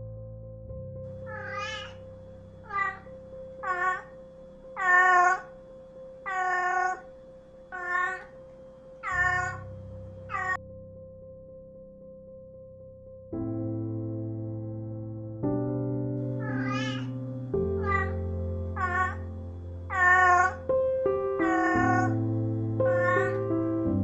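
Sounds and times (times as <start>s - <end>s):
cat meowing: 1.3s - 2.0s, 2.6s - 4.2s, 4.8s - 5.6s, 6.2s - 7.1s, 7.7s - 8.4s, 9.0s - 9.7s, 10.3s - 10.6s, 16.4s - 19.3s, 19.9s - 20.7s, 21.4s - 22.2s, 22.8s - 23.5s.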